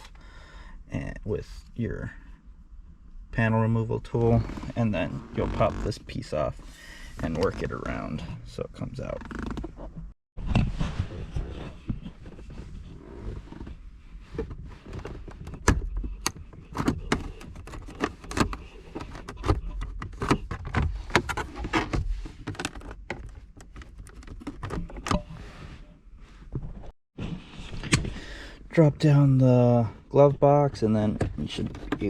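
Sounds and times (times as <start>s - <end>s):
low rubbing and handling rumble: 3.0s - 28.1s.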